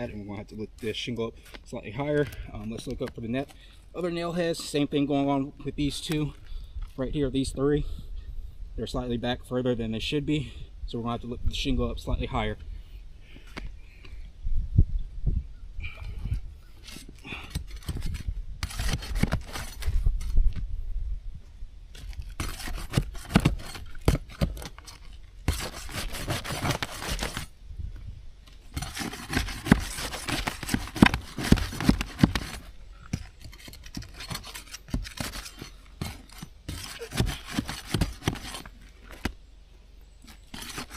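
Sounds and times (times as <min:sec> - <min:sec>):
shingles scraping and rubbing: 0:16.8 - 0:20.4, 0:21.9 - 0:27.5, 0:28.6 - 0:39.4, 0:40.2 - 0:40.9
shingles clicking and crackling: 0:28.5 - 0:39.4.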